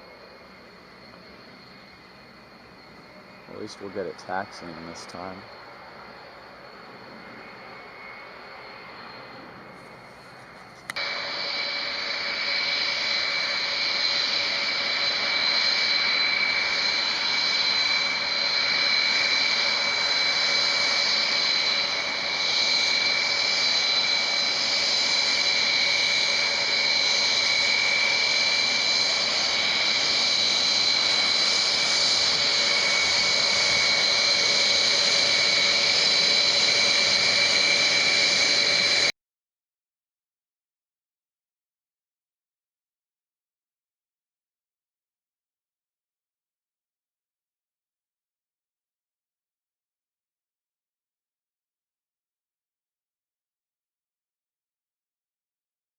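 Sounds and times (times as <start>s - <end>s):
jet engines whining: 0.0s - 39.1s.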